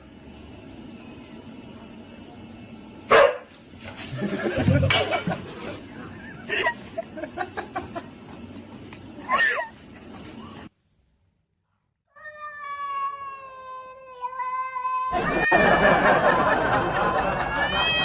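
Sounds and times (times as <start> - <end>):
cat meowing: 12.1 - 15.2, 17.7 - 18.0
cat yowling: 12.2 - 15.2, 17.6 - 18.0.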